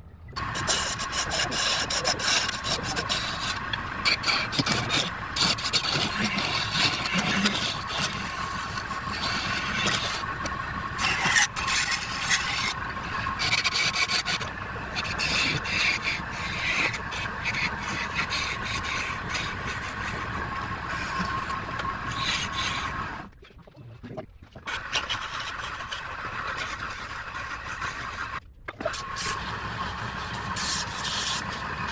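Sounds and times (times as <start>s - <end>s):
lathe whining: 0.4s - 23.3s, 24.7s - 28.4s, 29.0s - 31.9s
tool scraping spinning wood: 0.4s - 23.3s, 24.7s - 31.9s.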